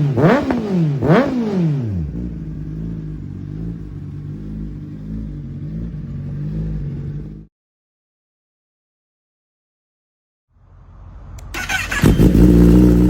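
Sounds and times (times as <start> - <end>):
motorcycle engine revving and idling: 0.0 - 7.5, 10.8 - 13.0.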